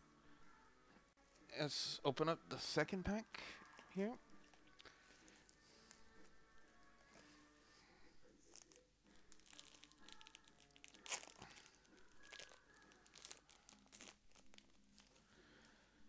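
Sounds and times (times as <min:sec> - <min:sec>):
foil wrapper crinkling and tearing: 0:08.5 - 0:15.2.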